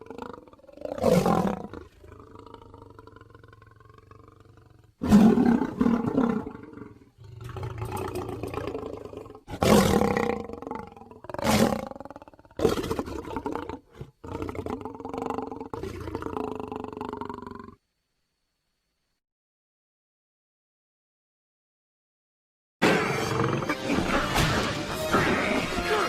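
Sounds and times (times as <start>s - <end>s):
low growl: 0.0s - 17.8s.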